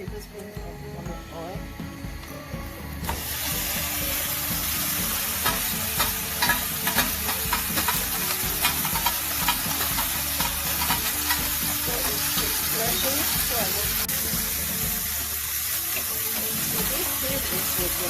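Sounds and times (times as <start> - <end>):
chicken sizzling in a pan: 2.9 - 18.0
sharp crackles and ticks: 4.9 - 18.0.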